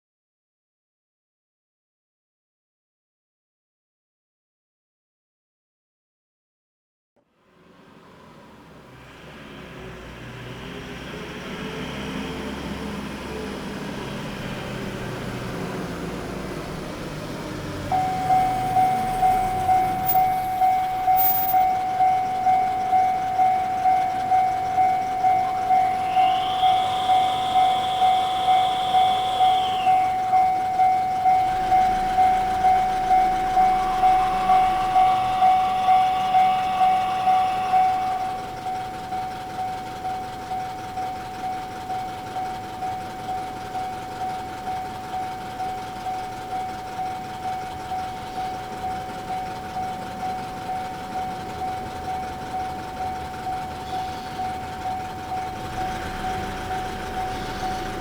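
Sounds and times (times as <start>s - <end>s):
road vehicle passing: 7.3s - 58.0s
level crossing warning bell ringing: 12.0s - 58.0s.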